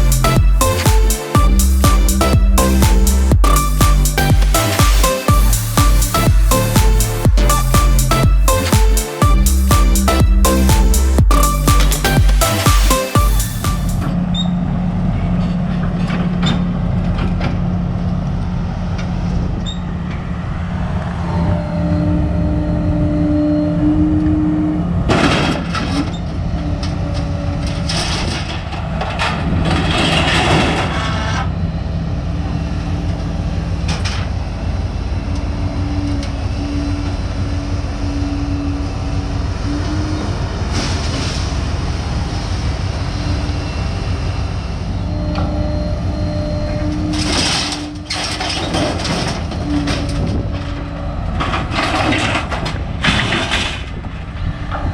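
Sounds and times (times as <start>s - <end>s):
vehicle engine running: 0.0s - 14.2s.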